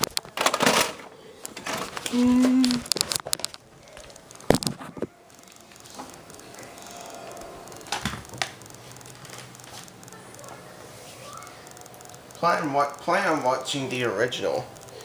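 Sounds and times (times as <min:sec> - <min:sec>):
sharp clicks: 0:02.6 - 0:10.7, 0:11.3 - 0:15.0
short steady hum: 0:03.7 - 0:15.0.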